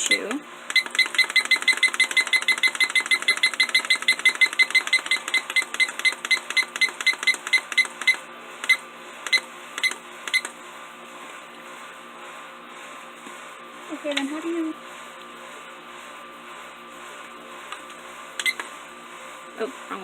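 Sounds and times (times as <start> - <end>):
alarm clock short high beeps: 0.1 - 10.5.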